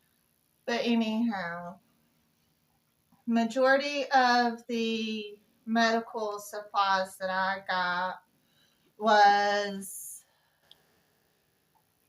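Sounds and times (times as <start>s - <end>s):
woman speaking: 0.7s - 1.8s, 3.3s - 8.2s, 9.0s - 10.2s.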